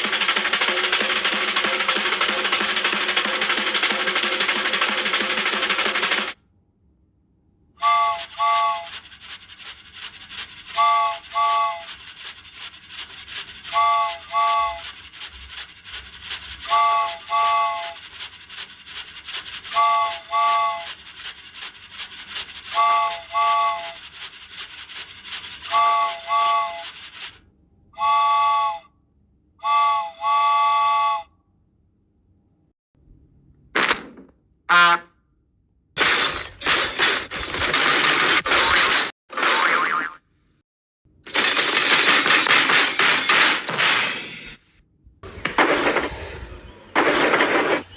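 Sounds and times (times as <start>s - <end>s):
rapid hissing train chug: 0.0s - 6.4s, 7.8s - 27.4s
steam train whistle tooting: 7.8s - 9.0s, 10.7s - 12.0s, 13.7s - 15.0s, 16.6s - 18.0s, 19.7s - 21.0s, 22.7s - 24.0s, 25.6s - 27.0s, 28.0s - 28.9s, 29.6s - 31.3s.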